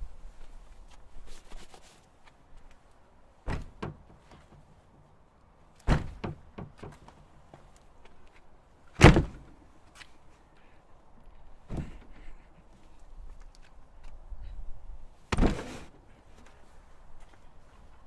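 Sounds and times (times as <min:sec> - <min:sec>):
shuffles: 0:00.1 - 0:04.9
body thudding against wooden door: 0:03.5 - 0:04.2, 0:05.9 - 0:07.0, 0:09.0 - 0:09.4, 0:15.3 - 0:15.7
door rattling: 0:05.9 - 0:07.0.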